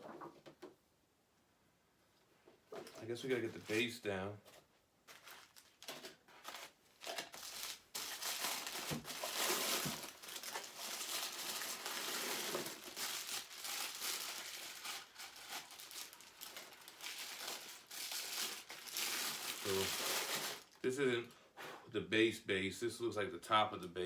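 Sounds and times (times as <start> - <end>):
packing material crinkling: 5.0 - 20.9.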